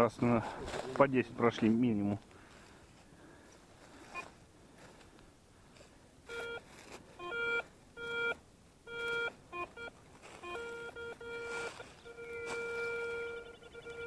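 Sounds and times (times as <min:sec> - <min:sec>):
electronic beeps: 0:07.2 - 0:14.0.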